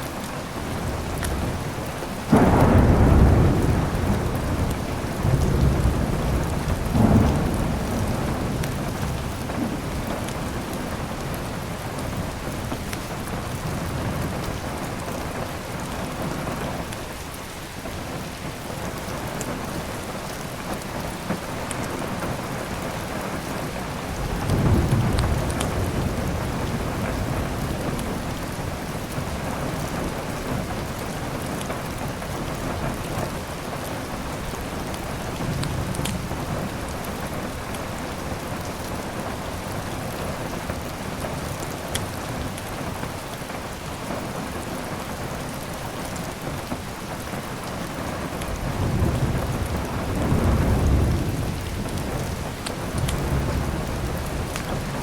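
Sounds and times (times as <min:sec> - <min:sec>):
heavy rain: 0:00.0 - 0:55.0
thunder rolling: 0:02.3 - 0:11.8, 0:24.0 - 0:28.9, 0:48.6 - 0:55.0.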